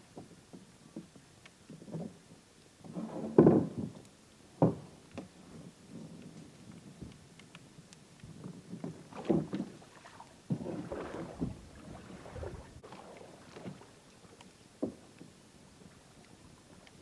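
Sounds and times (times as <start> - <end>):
paddle splashes: 8.9 - 16.9.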